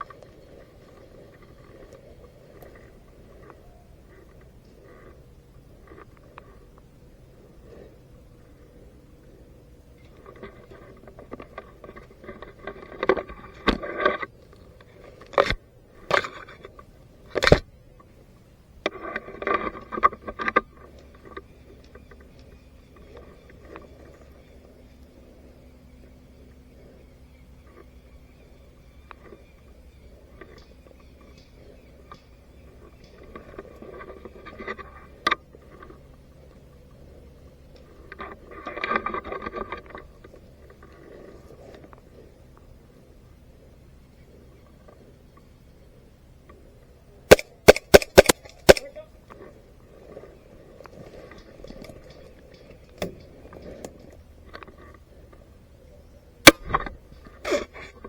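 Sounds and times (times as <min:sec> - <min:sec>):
rustling and scraping: 0:00.0 - 0:08.0, 0:10.0 - 0:18.1, 0:18.8 - 0:24.8, 0:29.1 - 0:43.0, 0:47.3 - 0:58.0
faint clicks: 0:00.0 - 0:18.2, 0:18.8 - 0:43.4
airsoft gun shots: 0:47.3 - 0:48.9, 0:56.4 - 0:56.7
sharp loud click: 0:47.3 - 0:48.9, 0:56.4 - 0:56.9.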